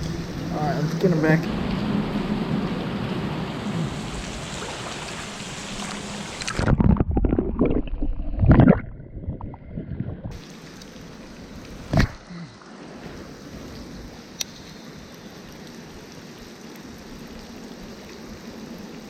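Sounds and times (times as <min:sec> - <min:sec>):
river water rushing: 0:00.0 - 0:06.7
fish splashing in water: 0:03.6 - 0:06.8.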